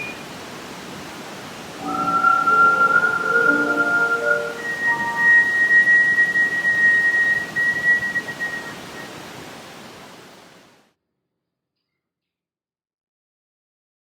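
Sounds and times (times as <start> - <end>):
steady hiss: 0.0 - 10.8
whistled high note: 1.8 - 9.1.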